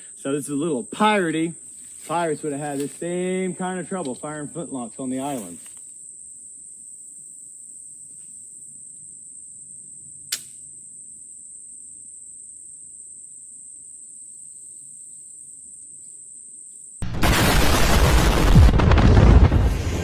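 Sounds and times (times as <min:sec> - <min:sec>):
crickets chirping: 0:00.0 - 0:17.0
flintlock hammer snap: 0:10.3 - 0:10.6
loud rumbling rush: 0:17.0 - 0:20.0.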